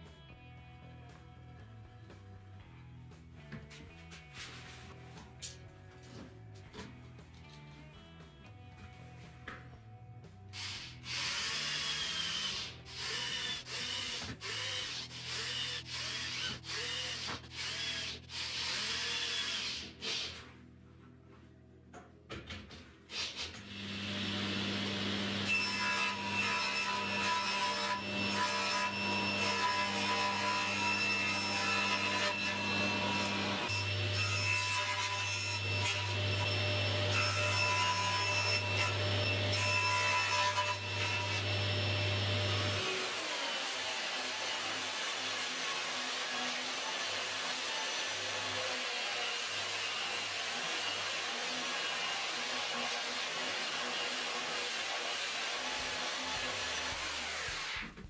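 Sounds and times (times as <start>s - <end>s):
electric motor humming: 23.8s - 25.5s.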